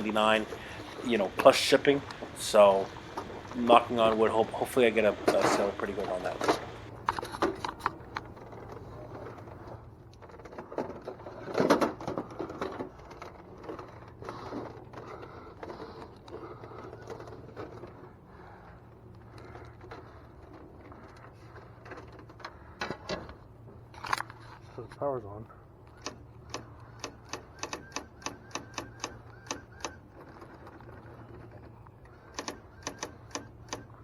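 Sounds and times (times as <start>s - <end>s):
steady low hum: 0.0s - 10.0s
handling and rustling noises: 0.0s - 25.9s.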